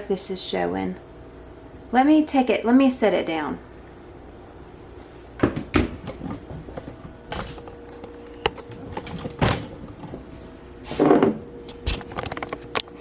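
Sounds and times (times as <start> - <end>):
faint steady hum: 0.0 - 13.0
objects knocking on counter: 5.4 - 6.8.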